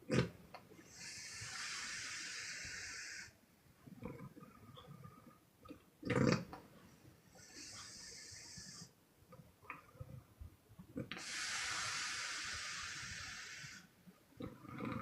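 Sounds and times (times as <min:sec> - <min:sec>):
low snore: 0:00.0 - 0:03.4, 0:07.3 - 0:09.0, 0:11.0 - 0:15.0
woman exhaling in airy puffs: 0:11.2 - 0:13.9.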